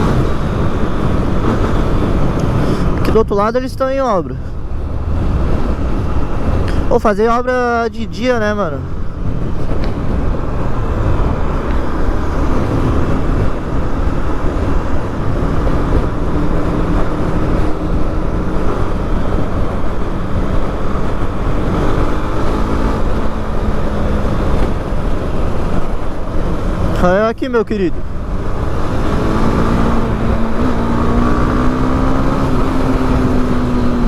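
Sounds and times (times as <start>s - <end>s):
motorcycle engine running: 0.0s - 3.1s, 4.4s - 27.3s, 27.9s - 34.0s
road and wind noise: 0.0s - 34.0s.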